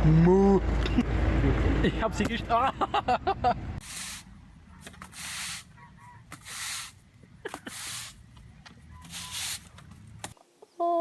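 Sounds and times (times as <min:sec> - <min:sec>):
hissing bursts: 0:03.8 - 0:04.3, 0:05.0 - 0:05.7, 0:06.3 - 0:07.0, 0:07.6 - 0:08.2, 0:09.0 - 0:09.7.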